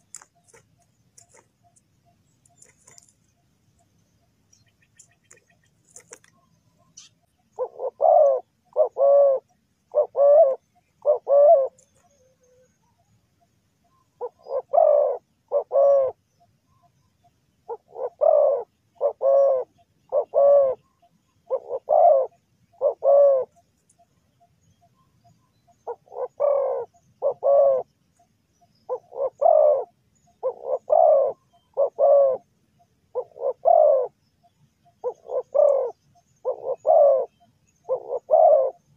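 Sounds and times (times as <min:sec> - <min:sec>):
dove cooing: 0:02.6 - 0:03.1, 0:04.9 - 0:12.7, 0:14.1 - 0:16.3, 0:17.6 - 0:23.7, 0:25.8 - 0:27.9, 0:28.8 - 0:32.5, 0:33.1 - 0:34.2, 0:34.9 - 0:38.9.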